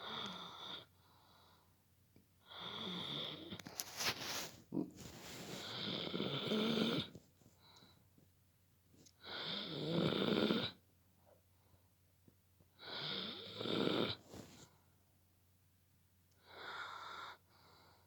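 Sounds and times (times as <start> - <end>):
dog snoring: 2.5 - 3.6, 4.4 - 7.1, 9.2 - 10.8, 12.8 - 14.6.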